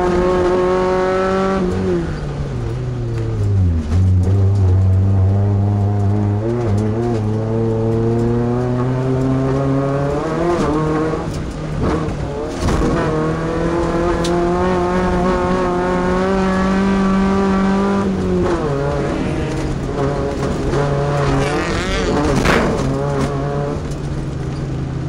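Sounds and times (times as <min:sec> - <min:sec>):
truck engine accelerating: 0:00.0 - 0:25.0.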